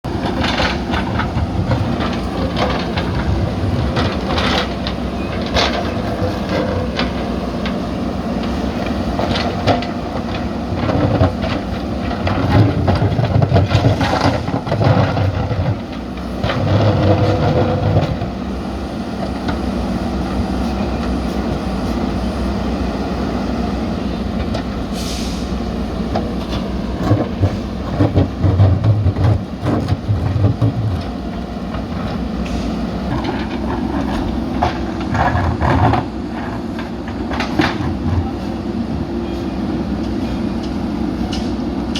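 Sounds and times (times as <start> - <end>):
diesel engine running under load: 0.0 - 41.9
clanks and knocks of concrete slabs: 0.1 - 19.8, 24.4 - 24.8, 26.0 - 39.4.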